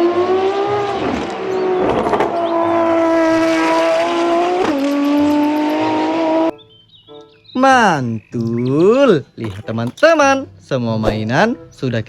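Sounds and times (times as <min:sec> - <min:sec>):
race car engine: 0:00.0 - 0:06.5.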